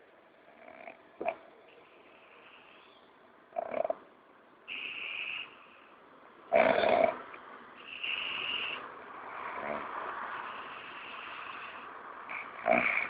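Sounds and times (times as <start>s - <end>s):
animal snoring: 0.4s - 1.5s, 3.5s - 4.0s, 4.7s - 5.8s, 6.5s - 13.0s.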